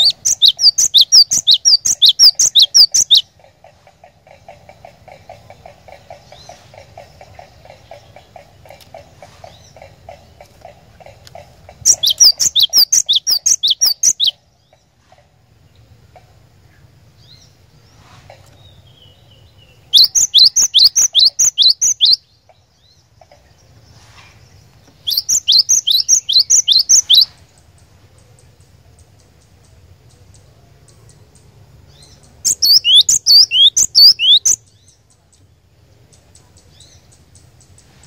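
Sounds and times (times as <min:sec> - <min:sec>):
bird singing whistled notes: 0:00.0 - 0:03.3, 0:11.9 - 0:14.4, 0:18.8 - 0:22.3, 0:25.0 - 0:27.4, 0:31.1 - 0:35.1
high curved bird chirp: 0:00.0 - 0:03.5, 0:04.2 - 0:15.1, 0:16.6 - 0:38.0.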